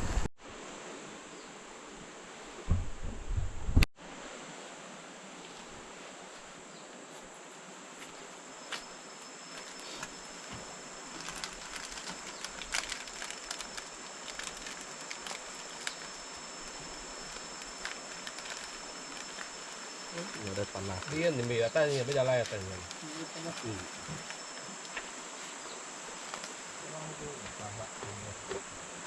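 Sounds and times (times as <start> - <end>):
even hiss: 0.0 - 29.0
high-pitched insect drone: 8.0 - 29.0.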